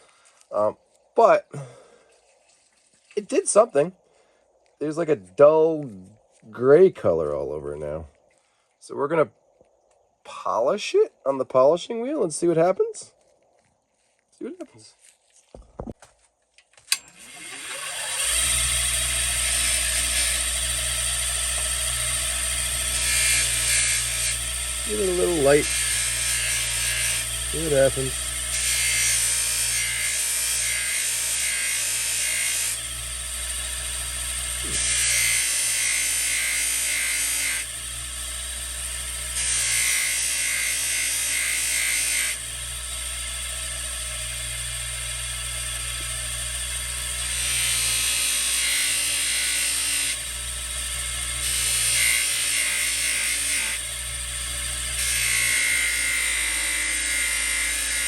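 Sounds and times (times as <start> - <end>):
metal part hissing on buffing wheel: 16.9 - 58.0
polishing wheel motor hum: 16.9 - 58.0.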